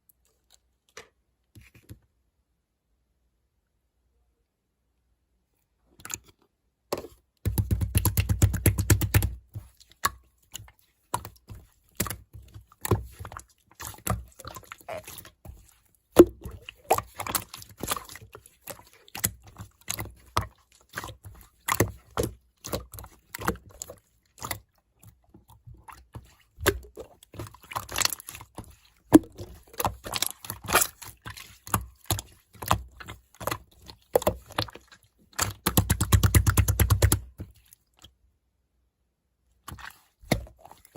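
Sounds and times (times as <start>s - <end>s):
slime squishing with wet pops: 7.4s - 38.2s, 39.6s - 40.9s.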